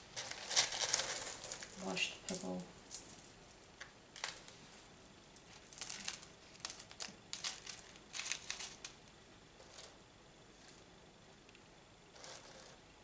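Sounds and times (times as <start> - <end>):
pebbles rattling and clicking: 0.2 - 4.4, 5.3 - 9.0.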